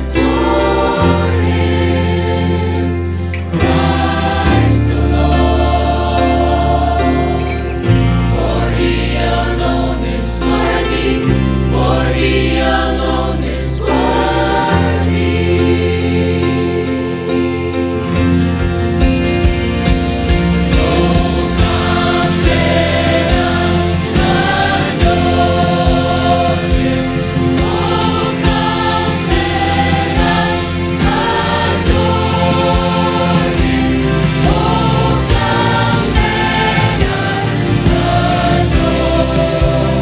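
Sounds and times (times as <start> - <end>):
choir singing: 0.0 - 40.0
band with bass and drums: 18.5 - 40.0.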